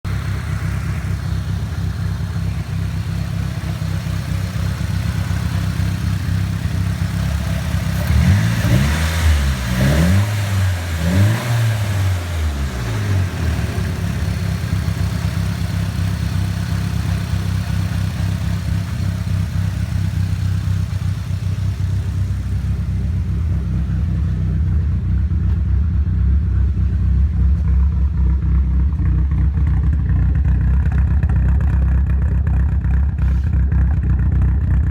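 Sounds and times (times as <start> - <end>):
car engine idling roughly: 0.0 - 34.9
engine revving: 0.1 - 30.0.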